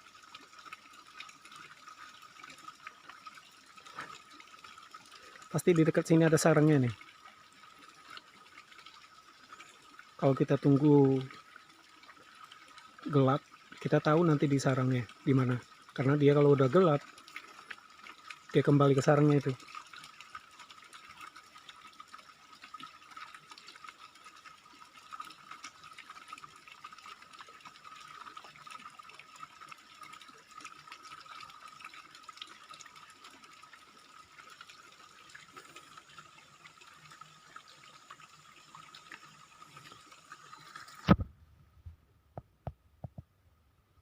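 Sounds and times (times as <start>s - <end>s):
water rushing: 0.7s - 7.2s, 12.2s - 20.2s.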